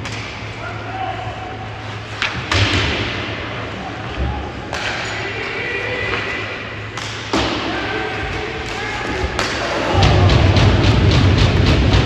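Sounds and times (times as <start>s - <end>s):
murmur of voices: 7.7s - 12.0s
hockey stick and puck cracks: 8.6s - 9.8s.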